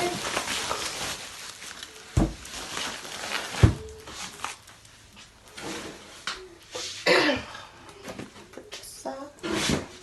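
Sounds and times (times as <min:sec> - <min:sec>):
cardboard packaging rustling: 0:00.0 - 0:06.2.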